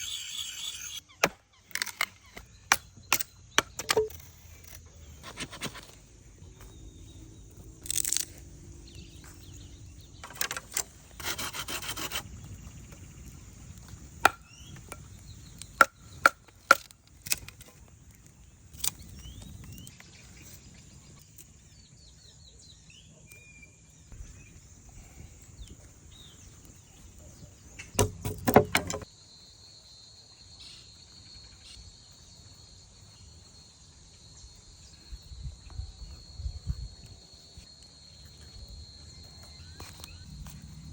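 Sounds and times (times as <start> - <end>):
insects chirring: 0.0 - 40.9
lower insect chirr: 0.0 - 40.9
sharp wooden knocks: 28.0 - 29.1.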